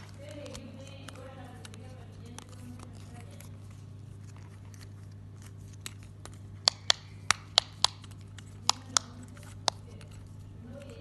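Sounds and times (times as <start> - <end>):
steady low hum: 0.0 - 11.0
fidget toy clicking: 6.6 - 10.1.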